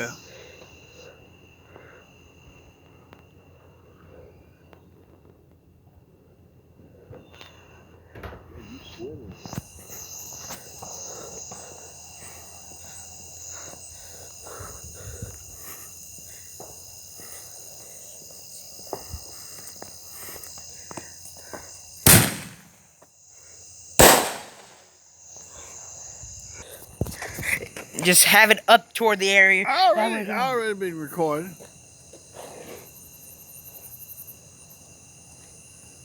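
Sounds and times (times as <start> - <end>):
insects chirring: 0.0 - 36.0
firework bangs with echo: 22.1 - 22.7, 24.0 - 24.8.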